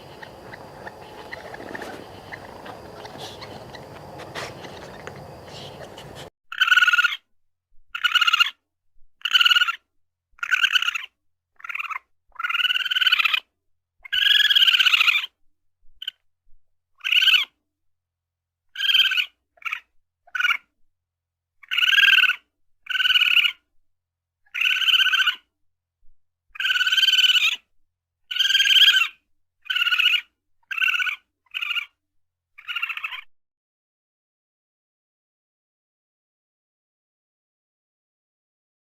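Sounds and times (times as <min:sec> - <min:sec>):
raccoon trilling calls: 0:00.0 - 0:07.2, 0:08.0 - 0:08.6, 0:09.2 - 0:09.8, 0:10.4 - 0:13.4, 0:17.0 - 0:17.5, 0:18.8 - 0:19.8, 0:21.6 - 0:23.6, 0:24.5 - 0:25.4, 0:26.6 - 0:27.6, 0:28.3 - 0:32.0, 0:32.6 - 0:33.3.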